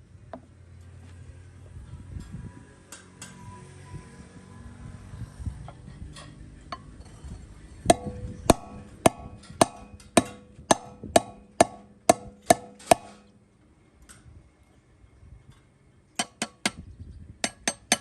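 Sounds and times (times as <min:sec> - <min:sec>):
hammer striking steel: 0:07.9 - 0:13.3, 0:16.2 - 0:16.8, 0:17.4 - 0:18.0.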